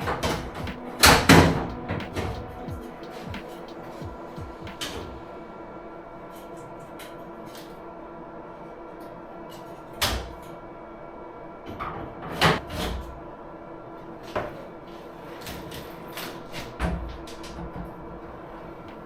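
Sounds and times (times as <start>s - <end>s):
steady hum: 0.0s - 6.3s.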